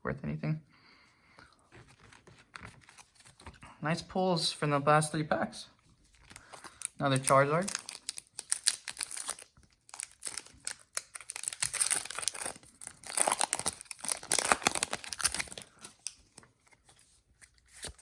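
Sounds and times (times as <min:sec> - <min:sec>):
foil pack tearing and crinkling: 0:06.4 - 0:16.2.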